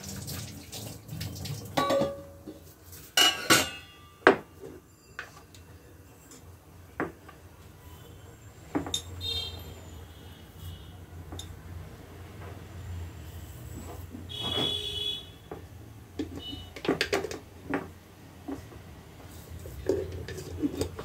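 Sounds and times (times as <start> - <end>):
dishes and pots clinking: 1.2 - 7.3, 8.7 - 9.2, 19.7 - 21.0.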